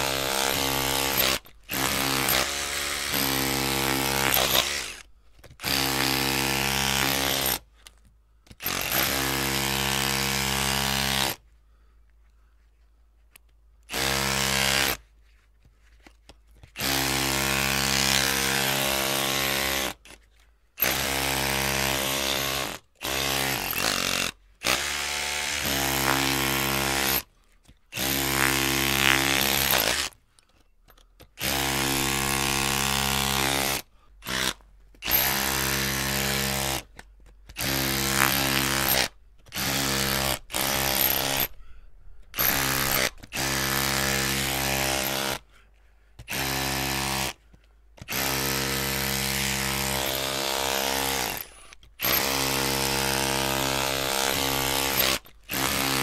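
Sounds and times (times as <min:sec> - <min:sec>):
electric drill running: 0:00.0 - 0:05.0, 0:39.6 - 0:41.5, 0:42.4 - 0:45.4, 0:52.0 - 0:56.0.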